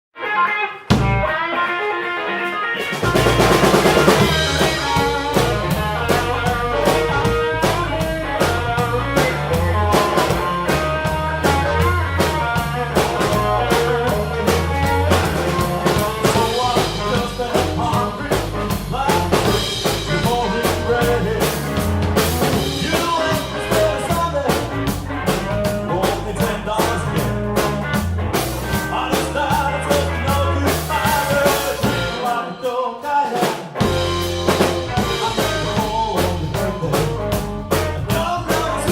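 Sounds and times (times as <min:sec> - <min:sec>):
blues band playing: 0:00.2 - 0:38.9
blues harmonica: 0:00.3 - 0:26.0.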